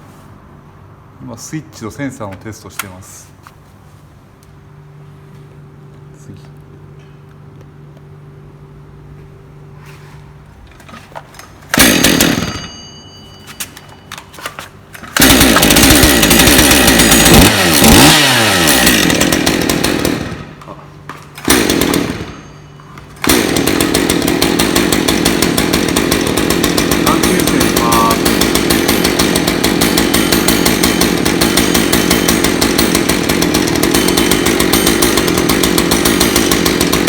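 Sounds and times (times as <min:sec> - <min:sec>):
chainsaw engine running in bursts: 0:11.7 - 0:37.0.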